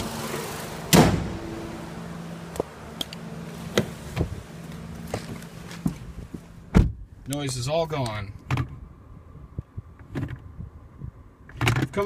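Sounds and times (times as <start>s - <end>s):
car engine idling: 0.0s - 7.6s
loud metal clunk: 0.9s - 1.9s.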